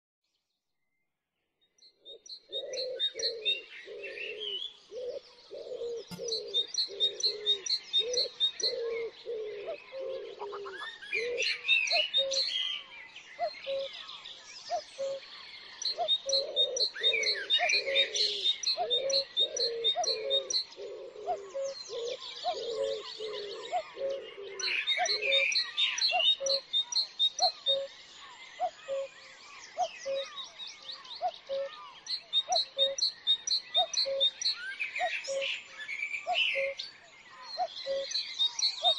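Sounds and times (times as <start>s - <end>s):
birds chirping and singing: 1.6s - 38.9s
low repeated cooing note: 2.5s - 11.5s, 16.0s - 25.5s.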